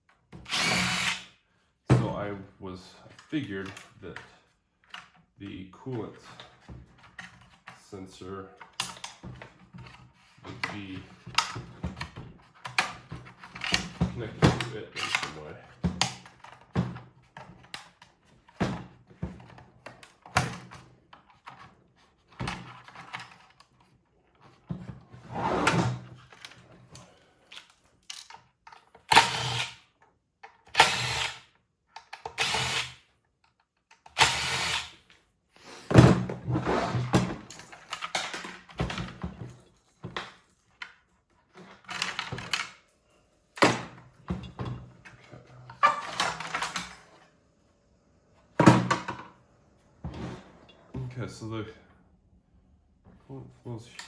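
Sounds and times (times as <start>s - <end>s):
metal parts knocking and clunking: 36.1s - 42.8s, 43.6s - 47.1s.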